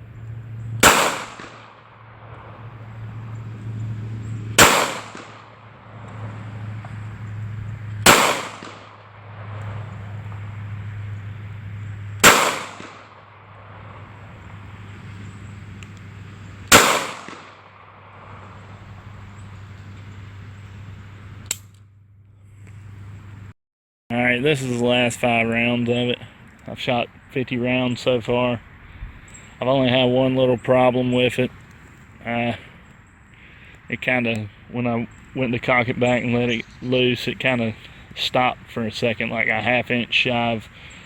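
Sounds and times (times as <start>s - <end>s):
pistol shots: 0.8s - 3.4s, 4.5s - 6.8s, 8.0s - 10.7s, 12.2s - 14.7s, 16.6s - 19.3s
small sharp click: 21.4s - 21.8s.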